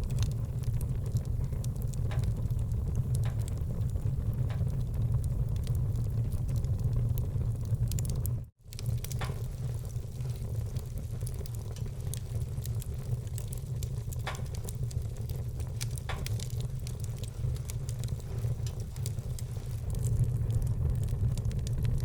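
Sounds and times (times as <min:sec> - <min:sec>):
low rumble: 0:00.0 - 0:11.8, 0:14.0 - 0:22.0
wood fire crackling: 0:00.0 - 0:22.0.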